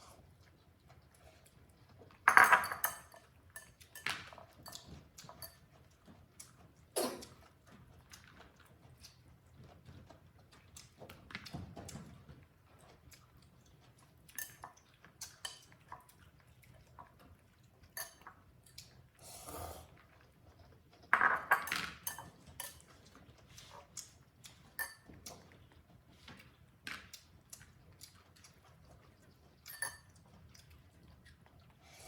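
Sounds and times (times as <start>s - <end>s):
plate clattering: 2.3s - 3.1s, 21.2s - 22.3s.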